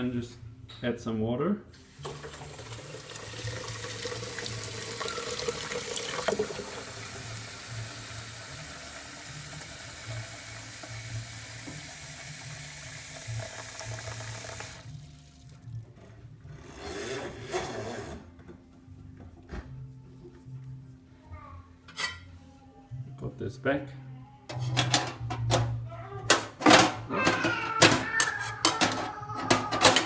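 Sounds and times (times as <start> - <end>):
water running from faucet into tank: 1.8 - 16.0.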